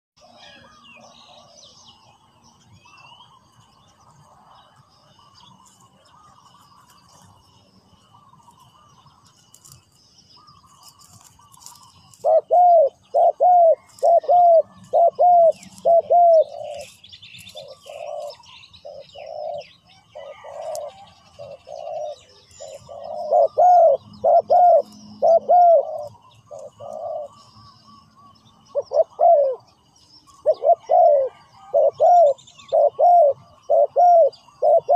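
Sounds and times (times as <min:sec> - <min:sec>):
faint birds chirping: 0:00.2 - 0:34.9
dove cooing: 0:10.4 - 0:27.6, 0:28.2 - 0:34.9.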